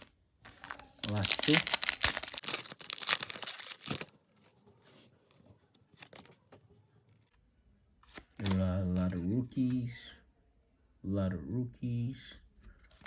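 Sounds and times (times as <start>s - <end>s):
plastic wrapper crinkling: 0.0s - 4.2s.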